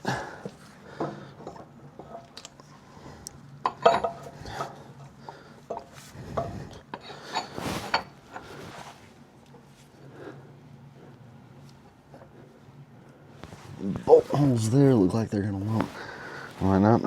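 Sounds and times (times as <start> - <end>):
metal parts clinking and clanking: 3.6 - 4.8.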